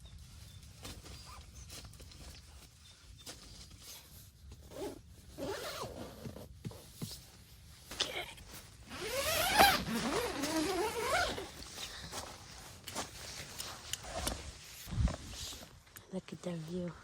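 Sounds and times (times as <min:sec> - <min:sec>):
zipper being pulled: 0:04.7 - 0:06.5, 0:08.9 - 0:11.6.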